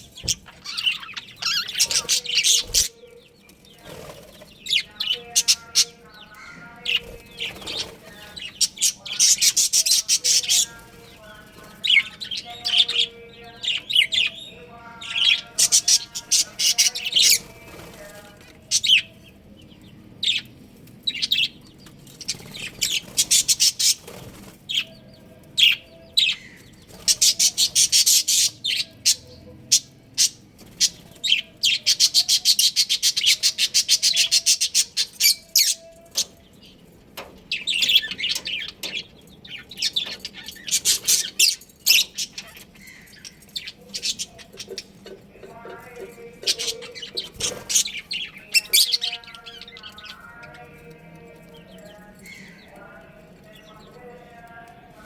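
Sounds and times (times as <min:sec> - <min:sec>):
budgerigars chirping: 0:00.0 - 0:17.6.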